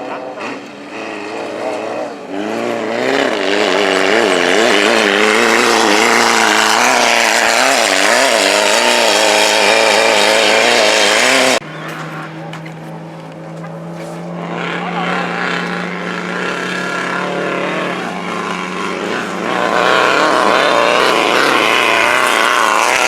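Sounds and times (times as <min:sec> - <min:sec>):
low steady engine drone: 0:00.0 - 0:23.0
race car engine at high revs: 0:00.0 - 0:23.0.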